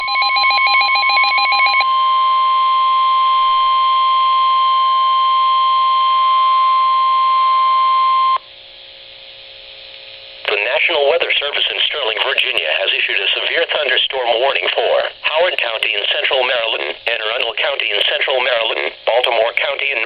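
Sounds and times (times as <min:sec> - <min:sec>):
high warning alarm tone: 0:00.0 - 0:08.4
rapid pulsing beep: 0:00.0 - 0:08.4
faint radio hiss: 0:09.2 - 0:20.0.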